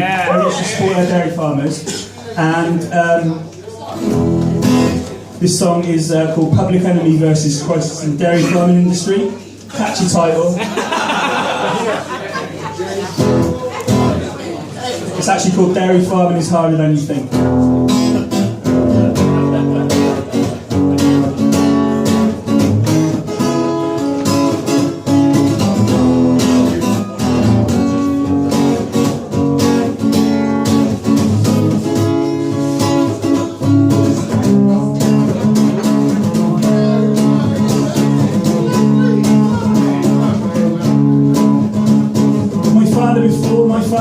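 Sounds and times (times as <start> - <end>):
strummed acoustic guitar: 0.0 - 9.3, 13.1 - 14.5, 15.2 - 44.0.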